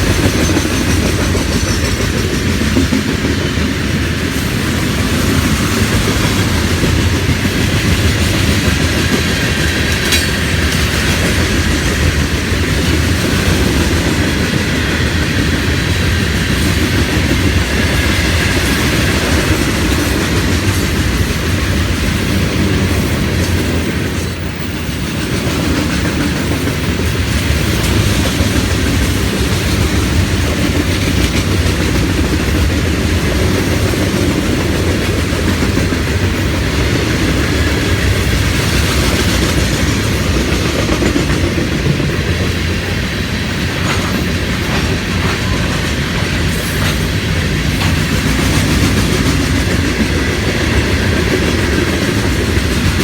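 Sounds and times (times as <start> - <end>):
freight train rumbling past: 0.0 - 53.0
wheels clattering over rail joints: 5.3 - 14.6.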